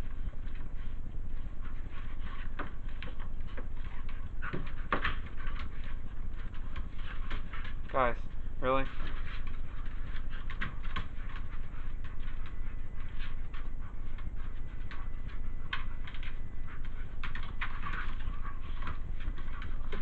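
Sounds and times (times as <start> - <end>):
steady low hum: 0.0 - 20.0
dog claws clicking on floor: 8.9 - 20.0.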